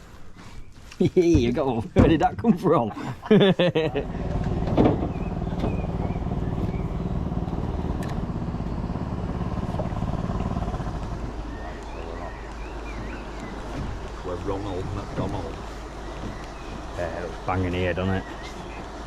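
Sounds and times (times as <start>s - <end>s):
outboard motor running: 4.0s - 19.0s.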